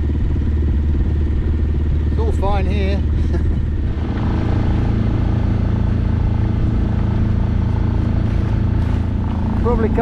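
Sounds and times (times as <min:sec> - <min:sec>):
boat engine running: 0:00.0 - 0:10.0.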